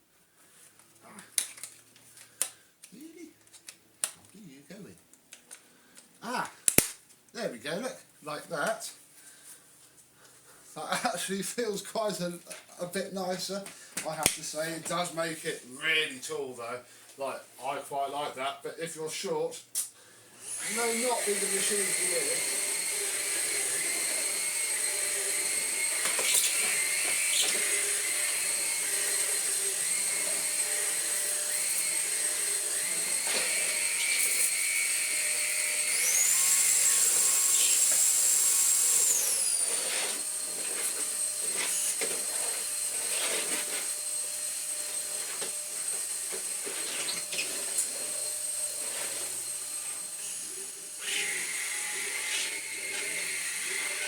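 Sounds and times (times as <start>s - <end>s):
vacuum motor whine: 20.4s - 54.0s.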